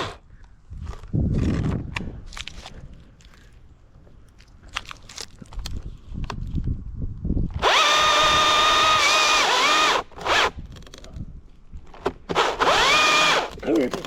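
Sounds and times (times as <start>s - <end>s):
chainsaw revving: 7.6s - 10.5s, 12.4s - 13.6s.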